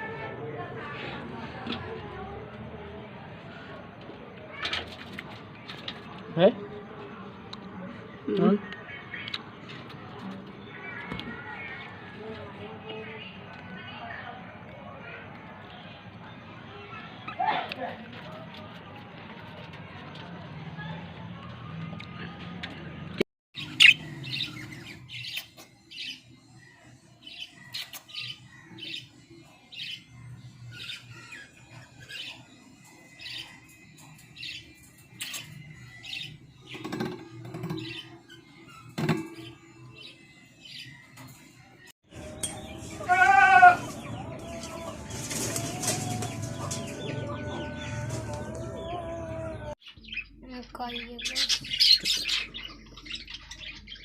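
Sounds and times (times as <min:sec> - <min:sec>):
birds chirping: 0:00.0 - 0:54.0
harsh bird calls: 0:23.6 - 0:54.0.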